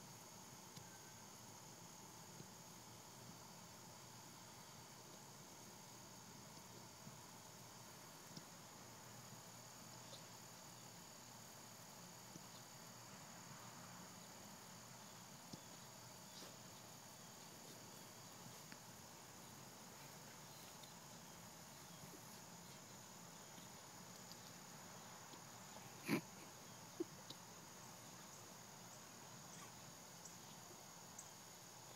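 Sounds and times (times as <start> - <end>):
low hiss: 0.0 - 31.9
faint high-pitched tone: 0.8 - 1.3.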